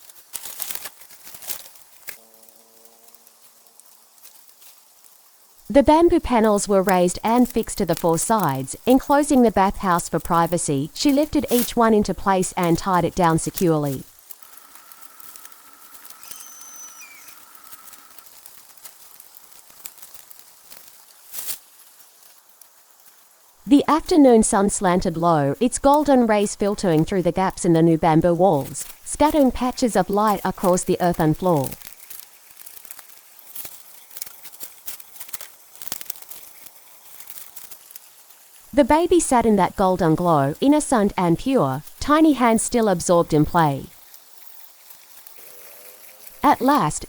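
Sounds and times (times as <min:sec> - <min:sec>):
rustling: 0:00.0 - 0:05.6, 0:13.9 - 0:23.5, 0:31.6 - 0:38.7
faint background hiss: 0:02.6 - 0:18.3, 0:21.2 - 0:32.2, 0:35.1 - 0:47.0
thin steady tone: 0:38.7 - 0:44.0.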